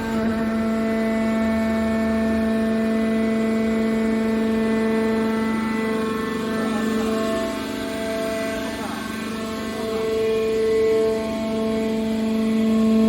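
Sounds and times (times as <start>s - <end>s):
hydraulic power unit humming drone: 0.0s - 13.0s.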